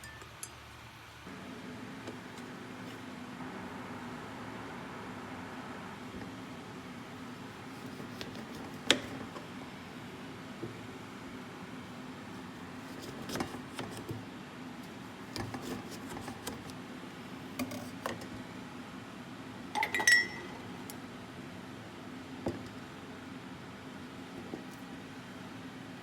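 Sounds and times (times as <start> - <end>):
glass and utensils clinking: 19.8 - 20.6.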